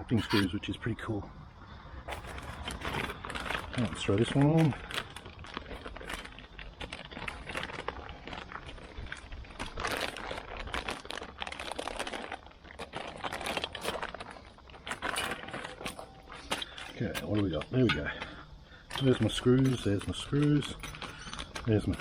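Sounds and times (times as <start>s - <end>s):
packaging rustling and crinkling: 2.1s - 22.0s
small metal clicks and knocks: 14.7s - 22.0s.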